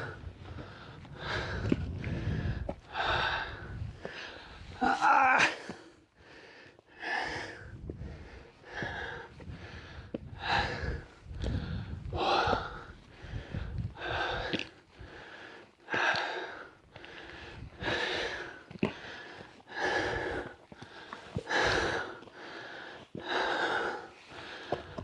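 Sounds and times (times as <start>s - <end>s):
person breathing hard: 0.0s - 25.0s.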